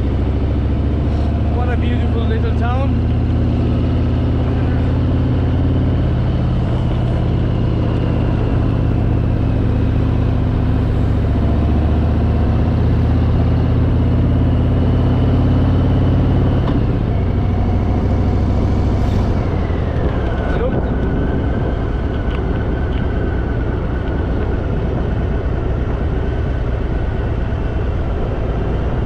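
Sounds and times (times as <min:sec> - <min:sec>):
motorcycle engine running: 0:00.0 - 0:29.0.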